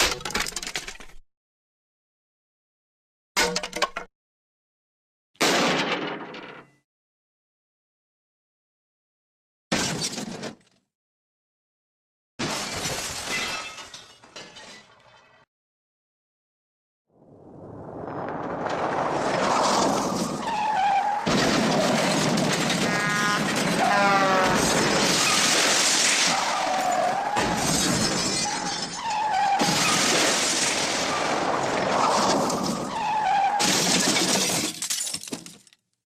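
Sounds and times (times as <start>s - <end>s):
smashing crash of debris: 12.4s - 15.5s, 18.0s - 23.9s, 24.6s - 35.7s.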